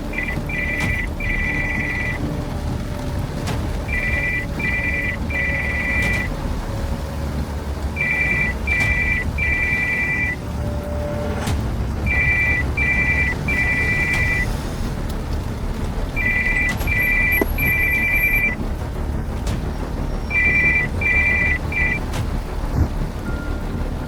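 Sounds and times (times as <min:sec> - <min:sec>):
low rumble of moving car: 0:00.0 - 0:24.0
electronic two-tone beeping: 0:00.1 - 0:02.2, 0:03.9 - 0:06.2, 0:08.0 - 0:10.4, 0:12.1 - 0:14.4, 0:16.2 - 0:18.6, 0:20.3 - 0:22.0.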